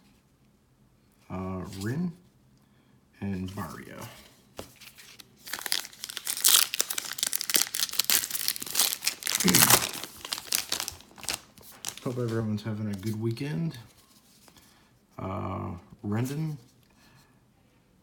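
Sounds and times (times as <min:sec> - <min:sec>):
wrapper tearing and crinkling: 0:04.9 - 0:12.4.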